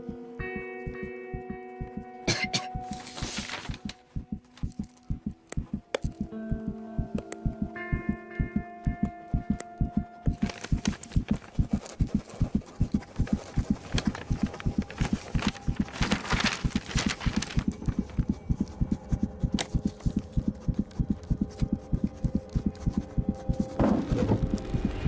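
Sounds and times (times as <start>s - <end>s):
sharp clicks: 3.7s - 7.7s
fast low thumping: 3.7s - 16.1s.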